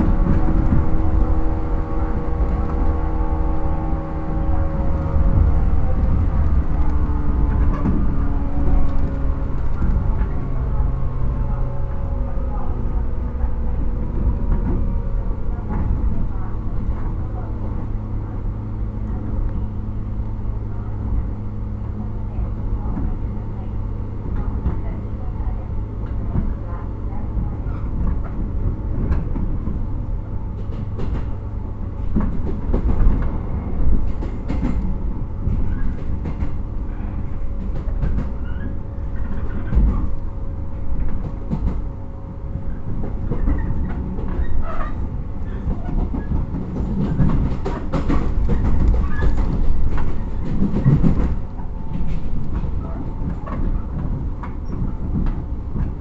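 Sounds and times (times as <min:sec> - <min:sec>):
train interior rumble and hum: 0:00.0 - 0:56.0
wheels clacking over rail joints: 0:30.5 - 0:56.0.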